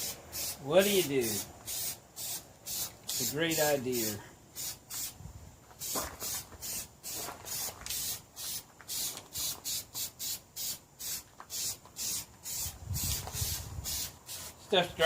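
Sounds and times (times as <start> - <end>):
aerosol spray can hissing: 0.0 - 5.2, 5.8 - 14.8.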